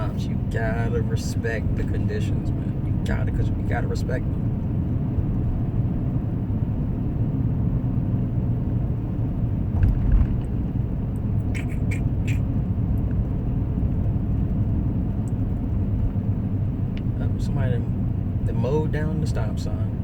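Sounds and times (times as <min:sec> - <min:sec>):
in-cabin road rumble: 0:00.0 - 0:20.0
heavy thump: 0:09.7 - 0:10.6.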